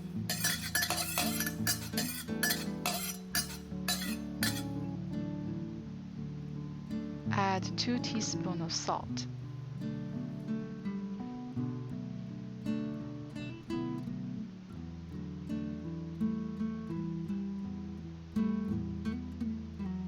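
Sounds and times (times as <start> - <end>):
strummed acoustic guitar: 0.0 - 5.8.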